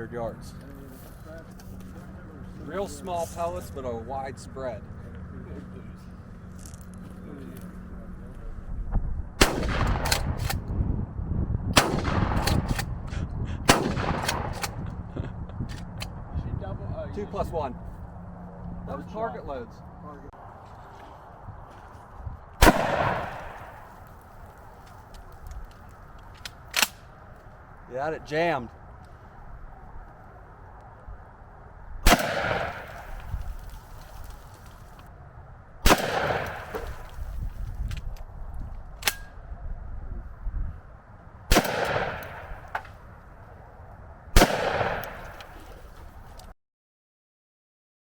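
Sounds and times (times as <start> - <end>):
shotgun blast echoing: 9.4 - 10.6, 11.8 - 12.9, 13.7 - 14.8, 22.6 - 24.0, 32.0 - 33.3, 35.8 - 37.0, 41.5 - 42.8, 44.4 - 45.7.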